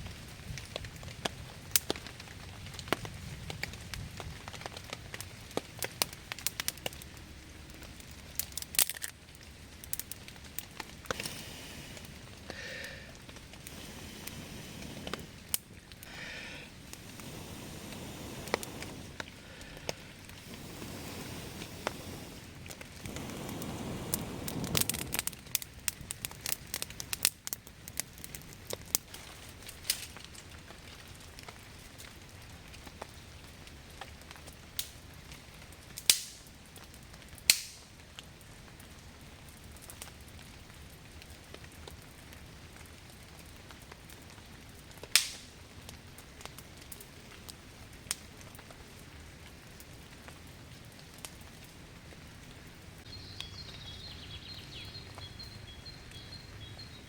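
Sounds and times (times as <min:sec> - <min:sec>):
campfire crackling and popping: 0:00.0 - 0:57.0.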